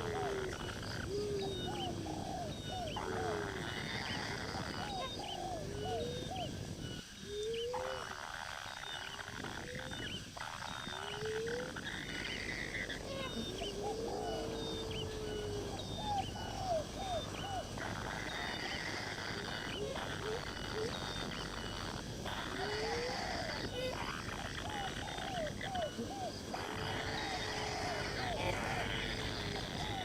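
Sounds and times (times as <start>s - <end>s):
rising animal calls: 0.0s - 30.0s.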